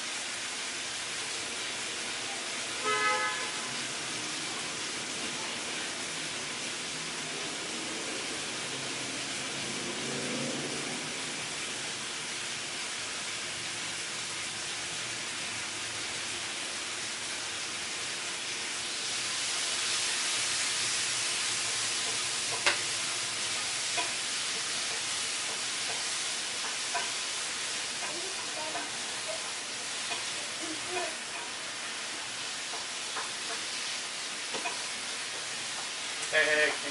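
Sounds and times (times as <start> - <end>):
computer fans whirring: 2.8 - 14.3.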